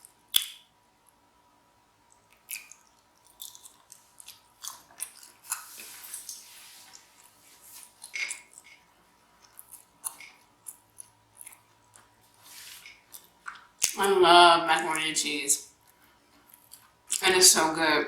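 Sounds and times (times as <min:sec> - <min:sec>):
person chewing food: 0:00.0 - 0:00.7, 0:02.0 - 0:14.0, 0:15.7 - 0:17.2.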